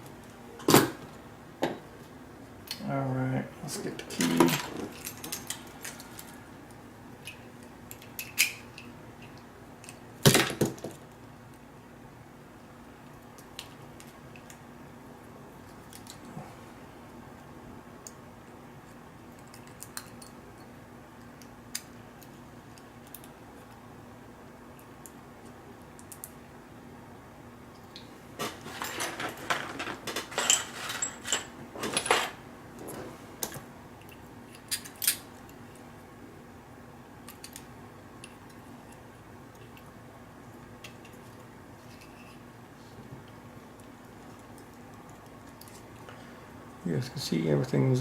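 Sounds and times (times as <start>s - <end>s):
metal lock parts clinking: 28.4s - 32.4s, 34.5s - 35.2s.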